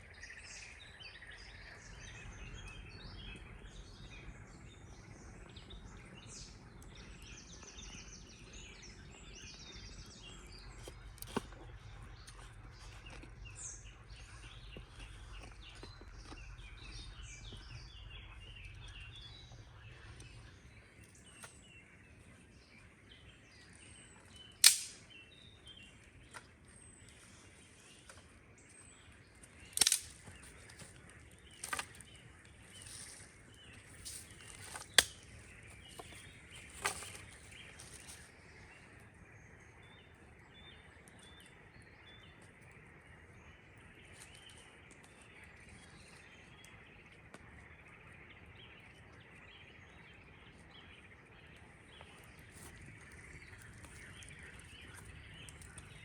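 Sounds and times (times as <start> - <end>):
small birds chirping: 0.0 - 56.0
wood cracking: 24.6 - 25.0, 29.7 - 30.9, 31.6 - 32.0, 34.0 - 35.3.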